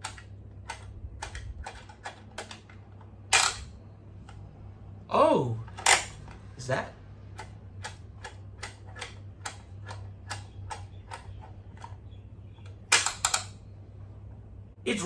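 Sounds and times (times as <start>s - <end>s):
toy jaw snapping shut: 3.3s - 3.7s, 5.8s - 6.2s, 12.9s - 13.5s.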